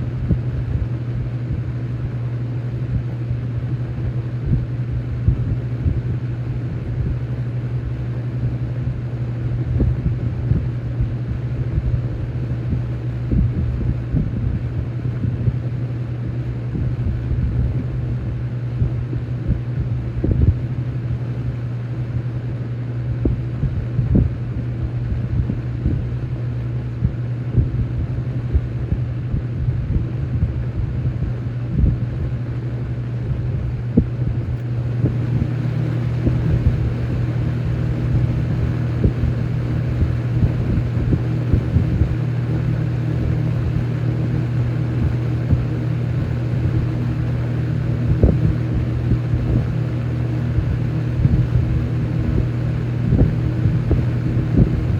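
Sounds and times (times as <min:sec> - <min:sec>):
box fan humming: 0:00.0 - 0:54.9.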